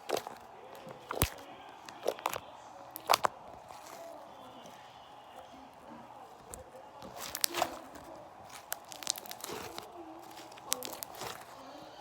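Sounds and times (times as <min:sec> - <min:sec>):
slime sticky clicks and pops: 0:03.0 - 0:03.3, 0:08.5 - 0:11.4.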